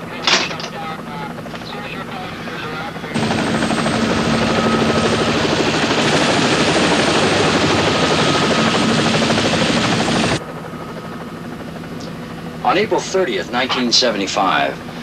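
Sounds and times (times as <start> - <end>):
helicopter rotor chopping: 0.0 - 15.0.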